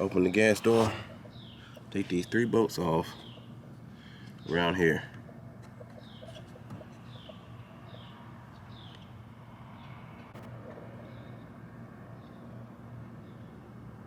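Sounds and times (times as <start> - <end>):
small bird calling: 0.7 - 2.4.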